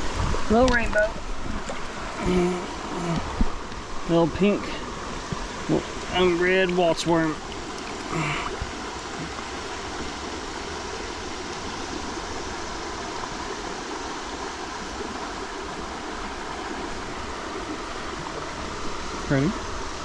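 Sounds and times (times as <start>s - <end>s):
stream water flowing: 0.0s - 20.0s.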